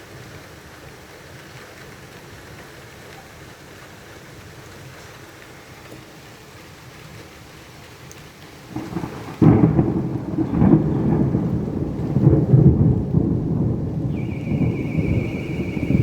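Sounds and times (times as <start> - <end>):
thunder clap: 8.7 - 16.0
thunder rumbling: 8.7 - 16.0
steady high tone: 14.1 - 16.0.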